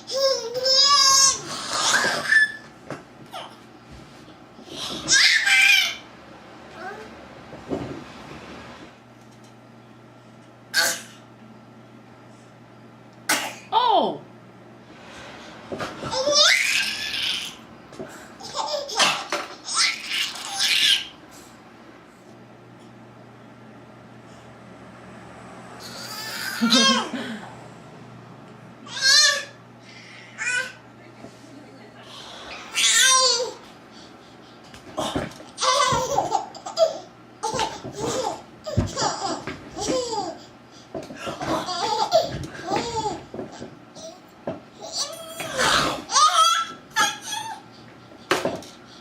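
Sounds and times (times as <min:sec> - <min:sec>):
baby laughing and giggling: 0:18.4 - 0:21.1, 0:25.9 - 0:27.2, 0:35.6 - 0:40.5, 0:41.4 - 0:44.2, 0:44.8 - 0:47.7.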